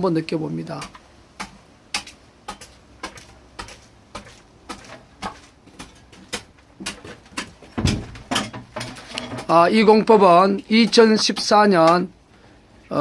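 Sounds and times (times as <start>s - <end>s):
heavy knock: 7.8s - 8.5s.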